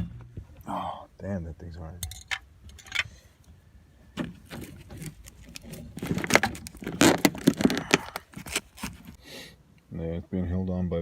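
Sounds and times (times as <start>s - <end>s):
plastic clicking and scraping: 4.5s - 9.2s.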